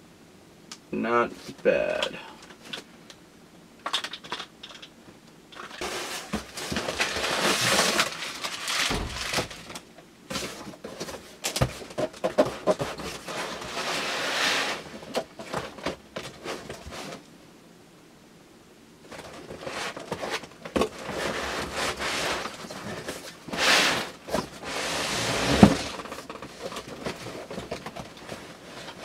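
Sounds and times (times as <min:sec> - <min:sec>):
clicks and knocks of items handled: 0:01.5 - 0:03.2, 0:03.8 - 0:13.7, 0:15.0 - 0:17.3, 0:25.5 - 0:29.0
packaging rustling: 0:05.5 - 0:17.2.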